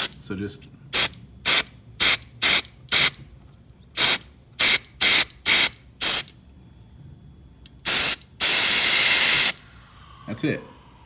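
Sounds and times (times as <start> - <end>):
aerosol can spraying: 7.9 - 9.6.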